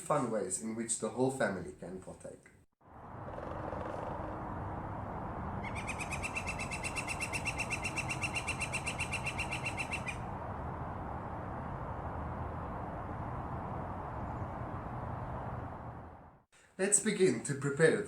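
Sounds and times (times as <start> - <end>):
bird chirping: 5.6 - 10.2.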